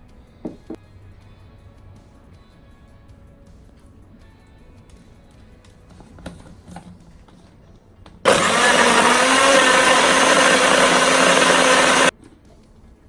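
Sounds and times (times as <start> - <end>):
motor running loudly: 8.3 - 12.1.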